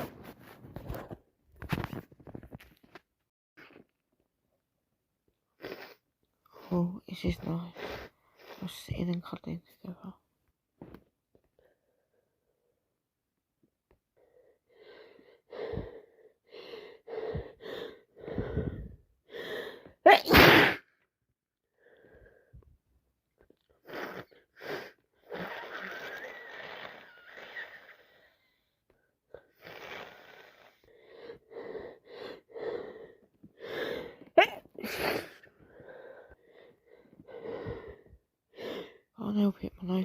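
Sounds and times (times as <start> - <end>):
person sneezing: 20.1 - 20.9, 34.4 - 35.5.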